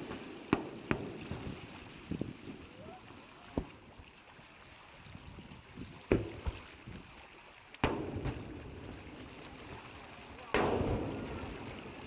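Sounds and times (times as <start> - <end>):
long rumbling echo: 10.5 - 12.0.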